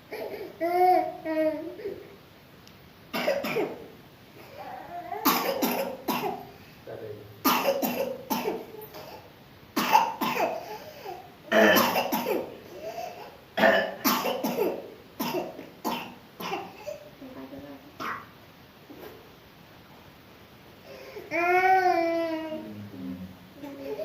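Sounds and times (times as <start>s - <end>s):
person coughing: 5.3s - 6.4s, 11.5s - 12.5s, 13.6s - 17.0s.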